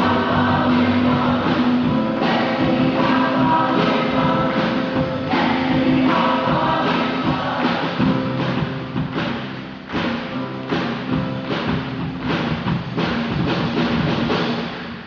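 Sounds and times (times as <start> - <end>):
group of voices singing: 0.0 - 8.5
steady beat: 0.0 - 15.0.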